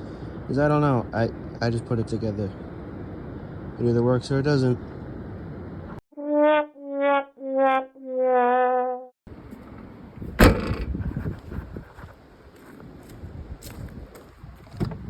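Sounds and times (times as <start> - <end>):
outdoor noise: 0.0 - 6.0, 9.3 - 15.0
sad trombone sound effect: 6.1 - 9.1.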